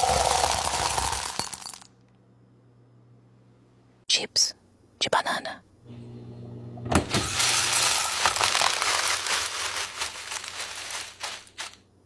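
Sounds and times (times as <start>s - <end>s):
banana chips pouring rattle: 0.0s - 1.9s, 7.1s - 11.8s
dispenser humming: 5.9s - 11.7s.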